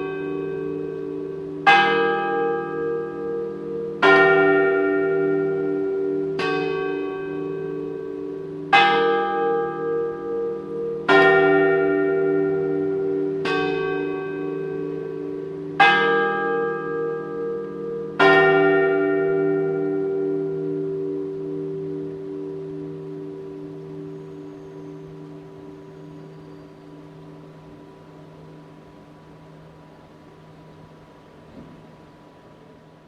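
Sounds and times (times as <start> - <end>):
large church bell tolling: 0.0 - 29.8.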